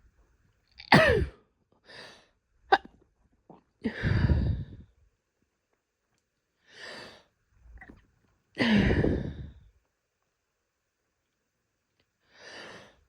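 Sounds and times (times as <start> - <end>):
woman stifling sneezes: 1.0 - 1.4
woman breathing: 3.8 - 5.0, 6.6 - 7.3, 8.6 - 9.7, 12.3 - 13.0.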